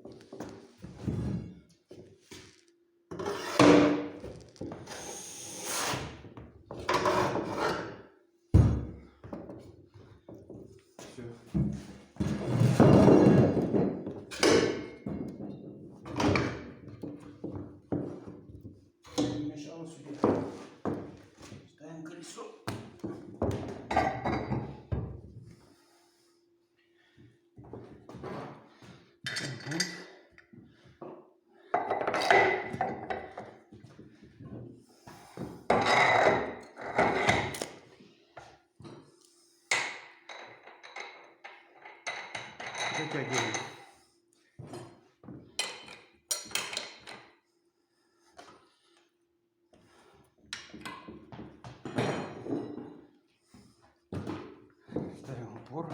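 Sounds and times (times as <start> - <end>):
metal clanks and scrapes: 3.1 - 4.2, 6.8 - 8.1, 35.7 - 37.7.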